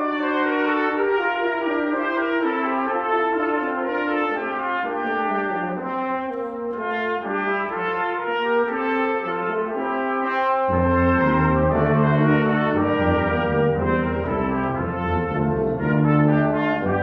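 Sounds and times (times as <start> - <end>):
brass ensemble playing chords: 0.0 - 17.0
low bass notes: 10.7 - 17.0.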